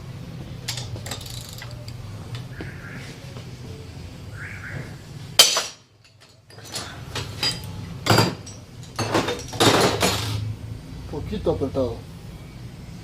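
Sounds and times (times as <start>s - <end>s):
metal tools clinking on engine parts: 0.6s - 2.5s, 5.4s - 10.4s
loud metallic clack: 5.4s - 5.9s.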